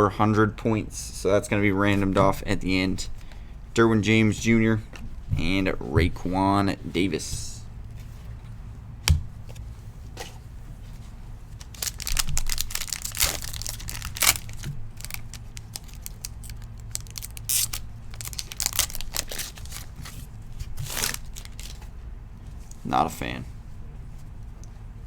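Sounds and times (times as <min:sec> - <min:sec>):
wrapper ripping and crinkling: 0:11.5 - 0:21.9.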